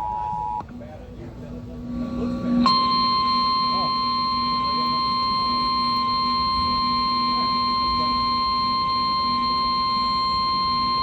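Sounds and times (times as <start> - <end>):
high-pitched alarm beep: 2.6 - 11.0.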